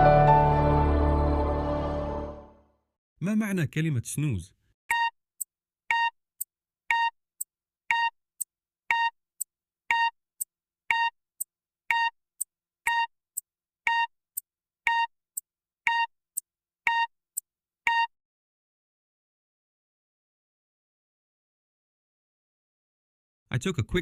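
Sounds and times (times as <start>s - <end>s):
electronic timer beeps: 4.9s - 5.2s, 5.9s - 6.2s, 6.9s - 7.2s, 7.9s - 8.2s, 8.9s - 9.2s, 9.9s - 10.2s, 10.9s - 11.2s, 11.9s - 12.2s, 12.9s - 13.1s, 13.9s - 14.1s, 14.9s - 15.1s, 15.9s - 16.1s, 16.9s - 17.1s, 17.9s - 18.1s.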